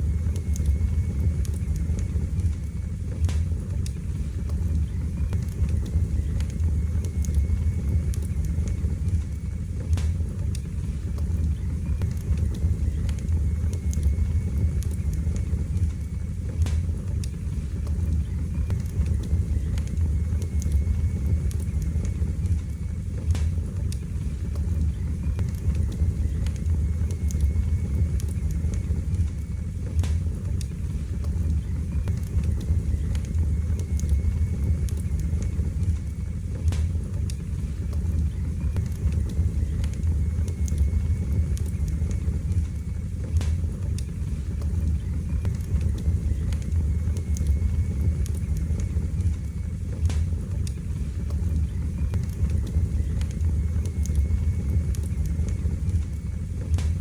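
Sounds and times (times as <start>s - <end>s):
fire crackles and pops: 0.0s - 57.0s
fire rumbling: 0.0s - 57.0s.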